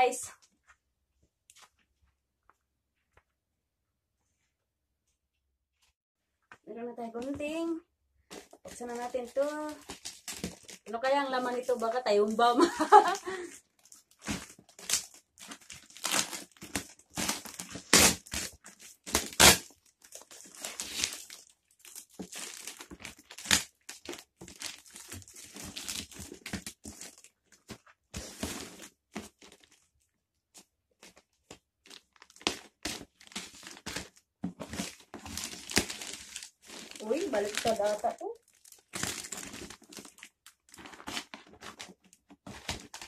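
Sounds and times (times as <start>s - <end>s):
plastic packaging crinkling and tearing: 8.3s - 43.0s
scissors cutting plastic: 12.2s - 29.8s, 31.9s - 43.0s.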